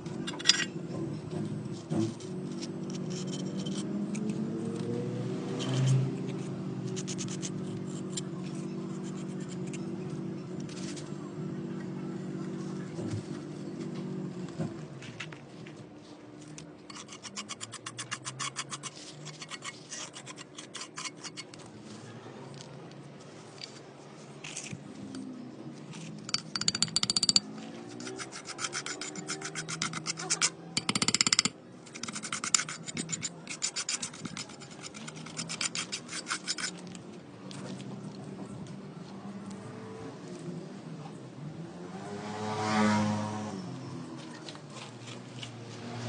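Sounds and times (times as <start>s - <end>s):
hand scraping a roof tile: 5.7s - 9.8s, 16.5s - 21.8s, 25.9s - 37.0s.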